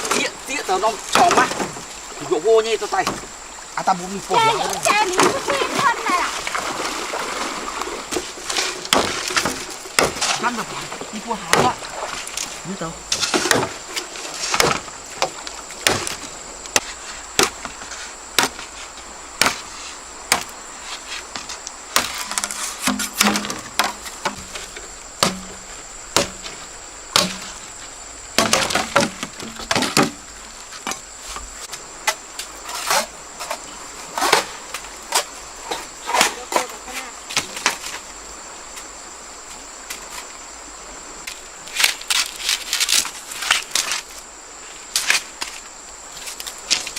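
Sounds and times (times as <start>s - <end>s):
chopping strikes on wood: 8.9s - 10.4s, 11.4s - 11.8s, 13.1s - 13.8s, 14.5s - 17.7s, 18.4s - 18.6s, 19.4s - 19.7s, 20.3s - 20.5s, 22.0s - 24.6s, 25.2s - 25.6s, 26.2s - 26.5s, 27.1s - 27.6s, 28.4s - 30.2s.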